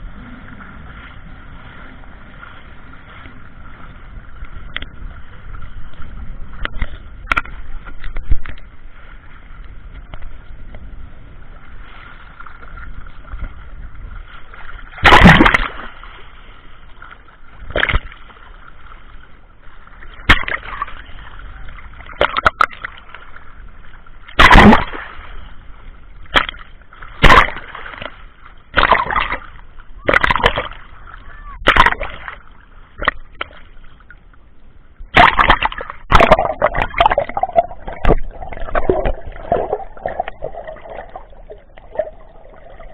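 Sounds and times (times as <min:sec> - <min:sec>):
muffled water sloshing: 0:00.0 - 0:42.9
loud water splashes: 0:14.6 - 0:16.4, 0:20.1 - 0:23.1, 0:24.3 - 0:25.5, 0:26.2 - 0:32.4, 0:35.1 - 0:42.9.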